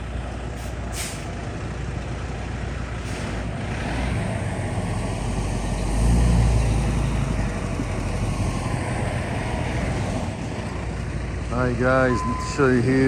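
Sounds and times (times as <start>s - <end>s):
diesel engine running: 0.0s - 13.0s
short sharp hiss: 0.6s - 1.3s.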